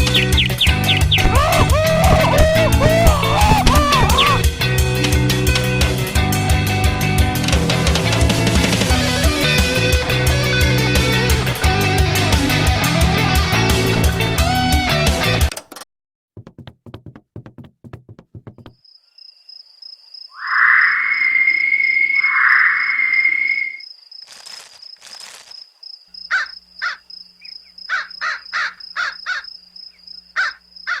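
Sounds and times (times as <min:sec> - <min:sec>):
cartoon crows cawing: 0:01.2 - 0:04.4, 0:27.9 - 0:29.5, 0:30.4 - 0:31.0.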